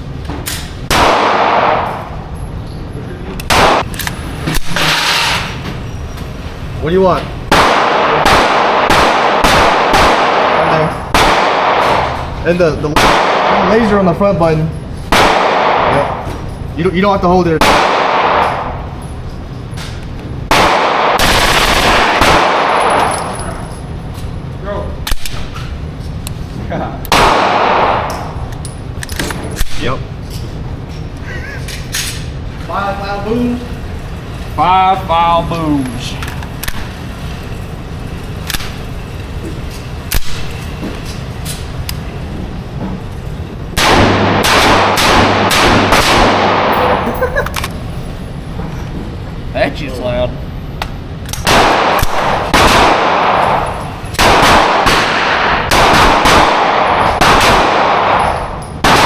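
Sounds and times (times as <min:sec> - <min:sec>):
gunshots with heavy echo: 0:00.8 - 0:02.3, 0:03.5 - 0:03.9, 0:07.5 - 0:14.1, 0:15.1 - 0:16.3, 0:17.5 - 0:19.0, 0:20.5 - 0:23.7, 0:27.1 - 0:28.5, 0:43.8 - 0:47.1, 0:51.4 - 0:59.0
rapid gunfire: 0:00.9 - 0:02.0, 0:03.5 - 0:03.9, 0:07.5 - 0:12.1, 0:12.9 - 0:13.9, 0:20.5 - 0:23.1, 0:43.8 - 0:47.0, 0:51.4 - 0:53.6, 0:54.2 - 0:59.0.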